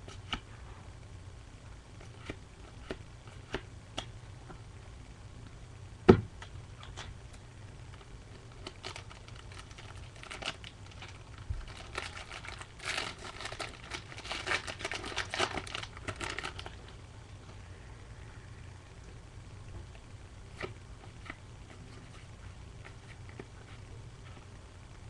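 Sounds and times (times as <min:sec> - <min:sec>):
wrapper tearing and crinkling: 0:08.6 - 0:16.8.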